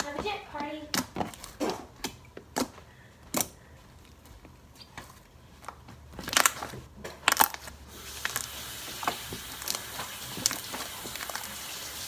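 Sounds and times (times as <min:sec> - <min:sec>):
steady hiss: 0:07.9 - 0:12.0.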